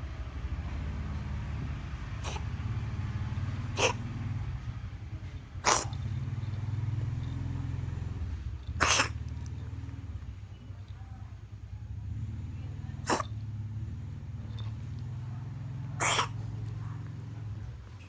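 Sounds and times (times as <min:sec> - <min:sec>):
cat coughing: 0:02.2 - 0:02.6, 0:03.6 - 0:04.2, 0:05.6 - 0:06.1, 0:08.7 - 0:09.4, 0:13.0 - 0:13.4, 0:16.0 - 0:16.6.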